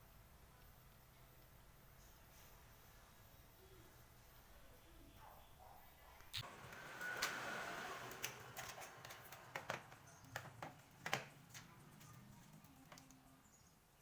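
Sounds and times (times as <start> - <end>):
light sharp clicks and taps: 8.2 - 13.3.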